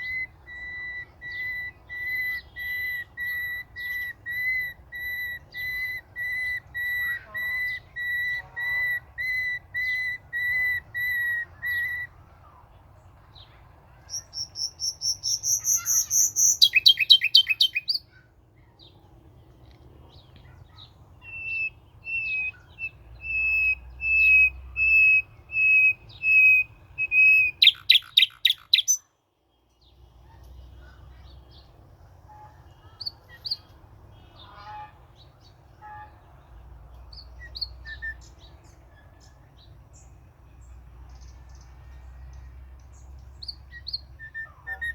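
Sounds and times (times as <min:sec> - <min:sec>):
bird whistling calls: 0:00.0 - 0:12.1, 0:14.1 - 0:18.0, 0:21.2 - 0:29.0, 0:43.7 - 0:44.9.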